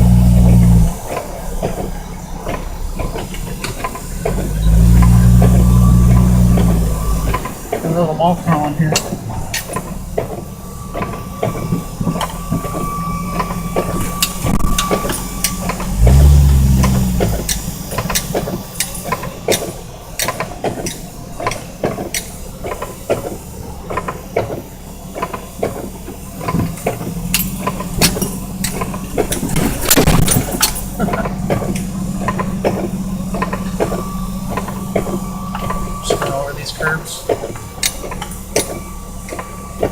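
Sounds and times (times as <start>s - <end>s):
car engine running at low speed: 0.0s - 39.9s
knocks and rattles in car: 15.7s - 22.2s.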